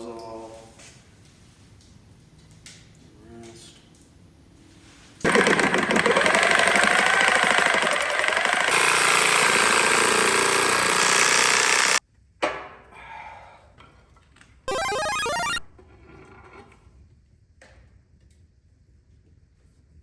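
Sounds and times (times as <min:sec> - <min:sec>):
power tool running under load: 0:05.2 - 0:12.0
electronic tones: 0:14.7 - 0:15.7.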